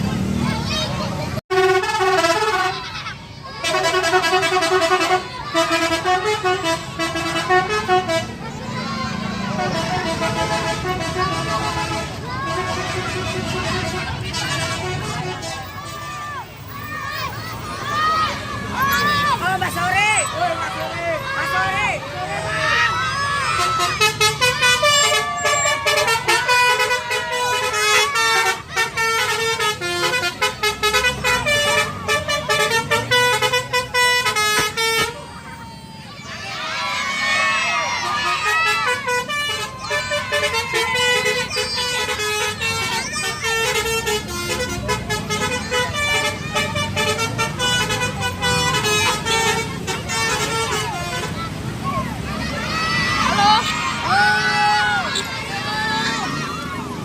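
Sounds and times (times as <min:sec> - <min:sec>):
low rumble of bus engine: 0:00.0 - 0:57.0
musical air horn melody: 0:01.5 - 0:02.9, 0:03.6 - 0:08.3, 0:09.6 - 0:16.0, 0:23.6 - 0:35.2, 0:38.0 - 0:51.4.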